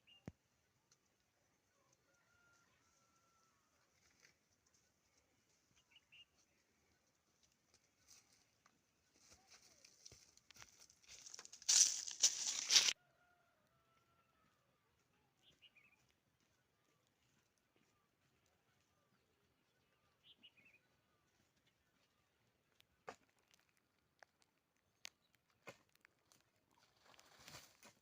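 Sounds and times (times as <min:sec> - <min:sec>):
dry rustling and crunching: 0:07.4 - 0:13.0, 0:23.0 - 0:28.0.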